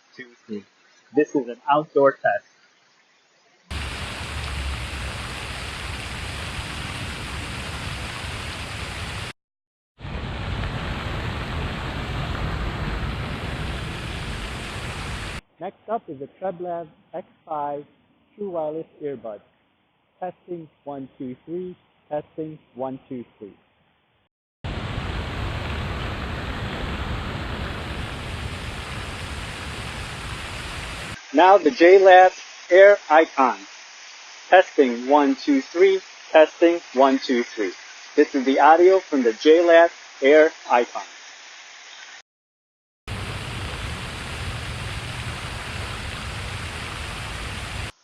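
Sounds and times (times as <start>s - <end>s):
fountain water rushing: 3.7s - 9.3s, 10.1s - 15.4s, 24.7s - 33.7s, 34.5s - 41.1s, 43.1s - 47.9s
low rumble: 10.0s - 15.4s, 24.7s - 31.2s, 43.1s - 47.9s.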